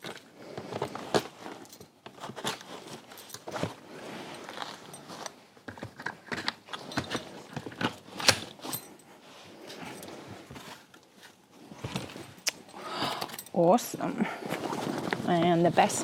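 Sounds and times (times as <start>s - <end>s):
clicks and knocks of parts: 5.2s - 9.0s.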